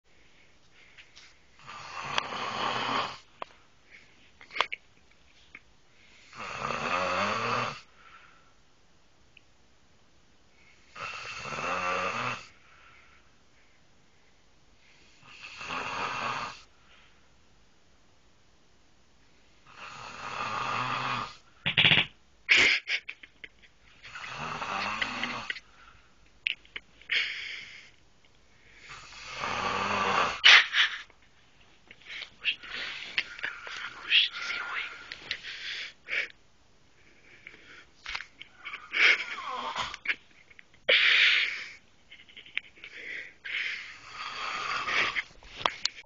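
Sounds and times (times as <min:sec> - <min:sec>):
man snoring: 0:01.6 - 0:03.2, 0:06.2 - 0:07.9, 0:10.9 - 0:12.6, 0:15.2 - 0:16.7, 0:19.7 - 0:21.4, 0:24.1 - 0:25.5, 0:28.9 - 0:30.4, 0:44.0 - 0:45.2.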